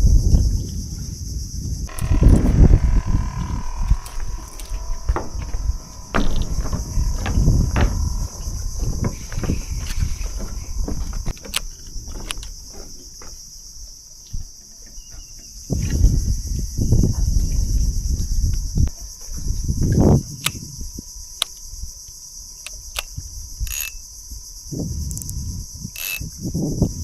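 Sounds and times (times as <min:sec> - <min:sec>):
insects buzzing: 0:00.0 - 0:27.0
low rumbling: 0:01.4 - 0:12.7
knocks and clicks: 0:01.9 - 0:12.6.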